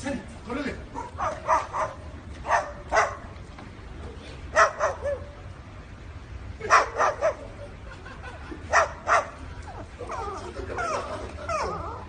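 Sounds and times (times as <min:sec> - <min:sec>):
dog yelping barks: 0:00.9 - 0:03.3, 0:04.5 - 0:05.4, 0:06.6 - 0:07.5, 0:08.7 - 0:12.0.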